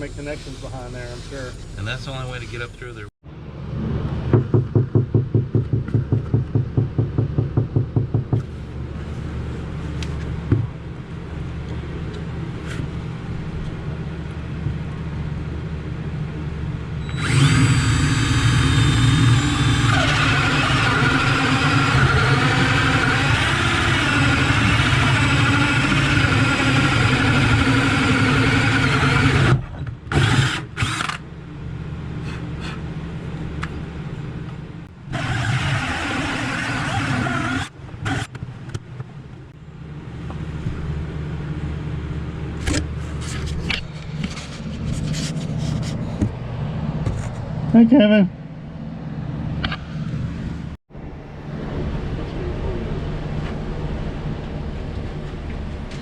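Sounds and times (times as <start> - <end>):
power drill running: 17.1 - 31.2, 35.1 - 38.3.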